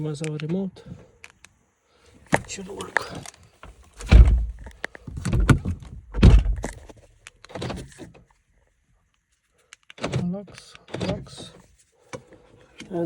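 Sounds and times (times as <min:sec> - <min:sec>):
car door locks thunking: 0:04.0 - 0:06.8.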